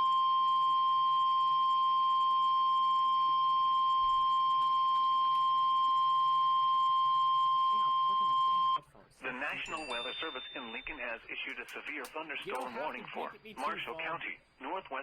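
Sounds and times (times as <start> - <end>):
high-pitched alarm tone: 9.4 - 11.2.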